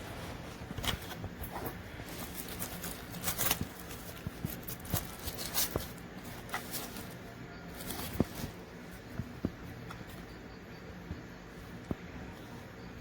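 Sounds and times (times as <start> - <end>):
soft rustle: 0.0 - 10.4.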